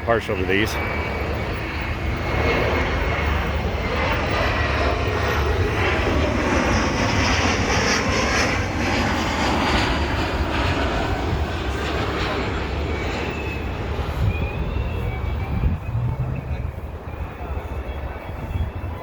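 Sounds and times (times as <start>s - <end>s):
engine running steadily: 11.0s - 19.0s.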